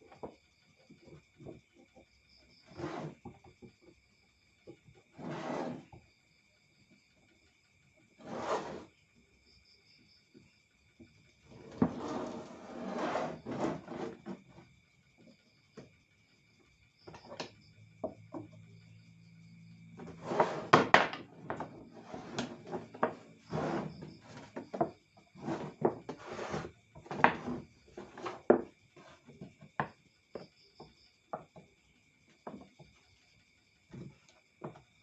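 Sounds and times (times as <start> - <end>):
wooden pieces knocking and rattling: 20.0 - 23.3, 24.2 - 30.4, 32.4 - 33.0.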